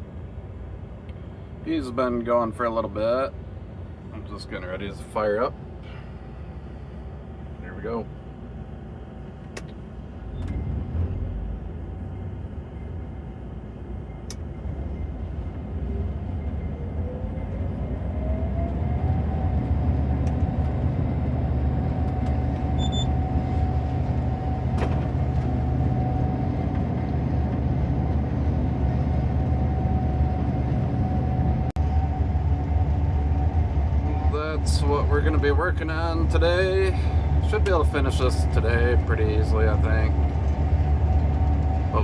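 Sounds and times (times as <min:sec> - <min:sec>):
deep engine drone: 0:00.0 - 0:42.0
rising whine: 0:14.3 - 0:38.7.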